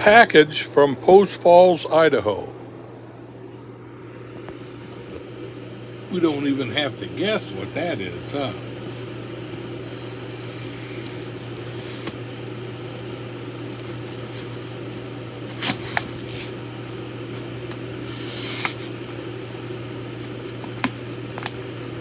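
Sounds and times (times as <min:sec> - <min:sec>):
fan humming: 0:00.0 - 0:22.0
cardboard package rustling: 0:08.8 - 0:22.0.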